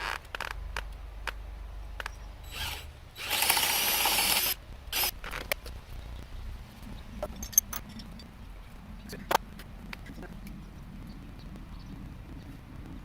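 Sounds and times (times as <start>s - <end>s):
loud mechanical rattle: 2.4s - 5.5s.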